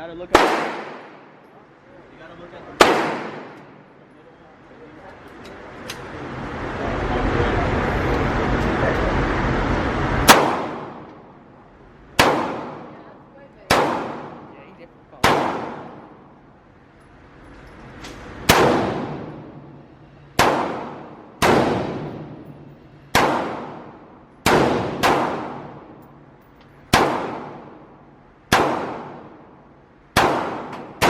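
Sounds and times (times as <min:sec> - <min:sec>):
gunshots echoing: 0:00.3 - 0:01.4, 0:02.8 - 0:03.9, 0:10.2 - 0:11.1, 0:12.2 - 0:13.0, 0:13.7 - 0:14.5, 0:15.2 - 0:16.3, 0:18.4 - 0:19.8, 0:20.4 - 0:22.5, 0:23.1 - 0:26.0, 0:26.9 - 0:27.9, 0:28.5 - 0:31.0.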